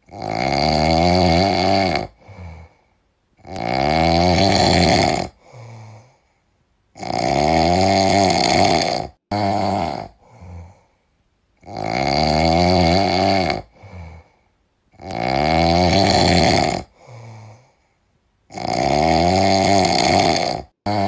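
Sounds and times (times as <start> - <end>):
loud snoring: 0.0 - 2.8, 3.4 - 6.2, 6.9 - 10.9, 11.6 - 14.4, 15.0 - 17.7, 18.5 - 21.0
faint breath sound: 2.1 - 3.0, 5.4 - 6.6, 10.1 - 11.2, 13.7 - 14.6, 16.9 - 18.2.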